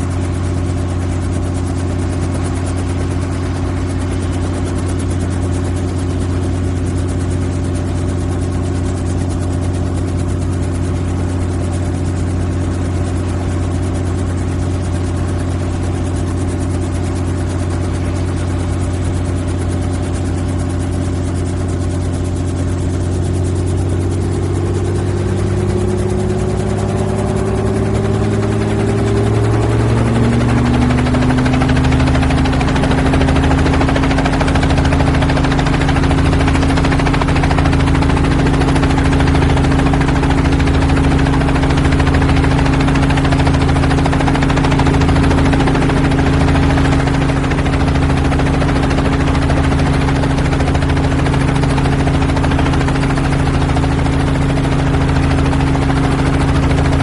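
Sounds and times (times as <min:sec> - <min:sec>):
helicopter engine and rotor: 0:00.0 - 0:57.0.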